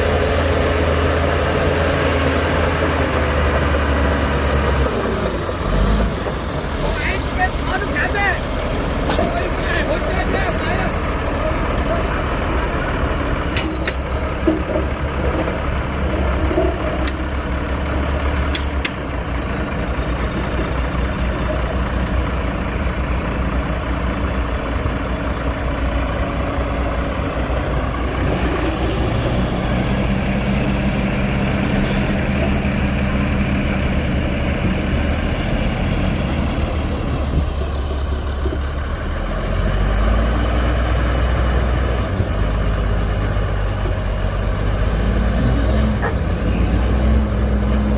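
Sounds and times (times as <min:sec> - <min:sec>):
heavy diesel machinery running: 0:00.0 - 0:47.9
sharp metallic clanks: 0:13.5 - 0:14.9, 0:16.9 - 0:19.3.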